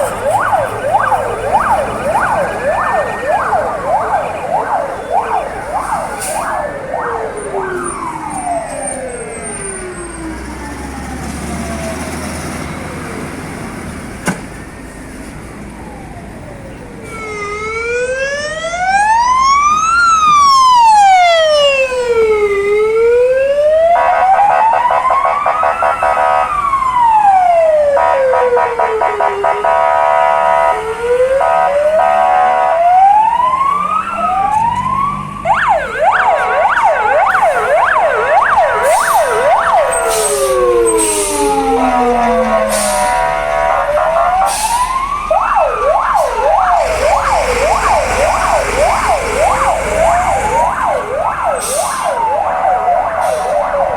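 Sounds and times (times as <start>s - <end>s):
fire truck siren: 0.0s - 53.9s
air horn blaring: 25.6s - 26.6s, 28.0s - 30.8s, 31.4s - 33.0s, 38.8s - 45.0s.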